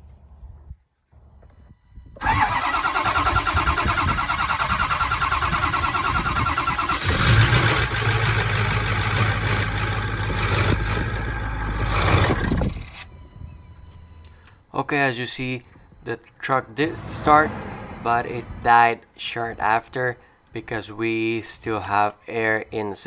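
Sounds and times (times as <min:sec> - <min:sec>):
diesel engine cranking on starter: 0:02.2 - 0:13.2
diesel engine running: 0:02.2 - 0:14.5, 0:16.6 - 0:18.8.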